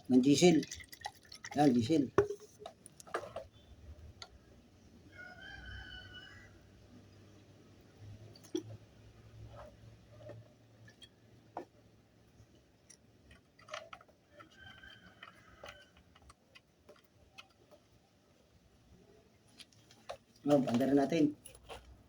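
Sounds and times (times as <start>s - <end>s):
distant chicken calling: 5.1s - 6.7s
small parts clicking and knocking: 8.0s - 18.2s.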